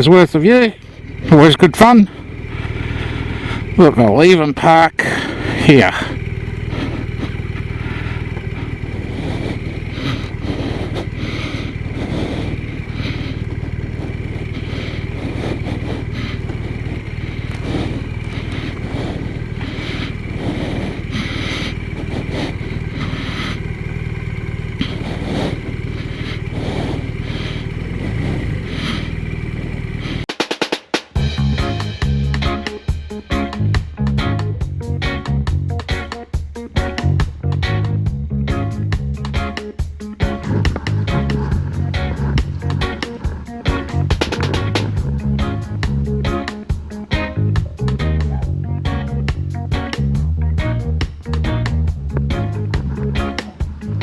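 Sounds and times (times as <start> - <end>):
motorcycle engine running at low revs: 0.0 - 30.4, 31.0 - 54.0.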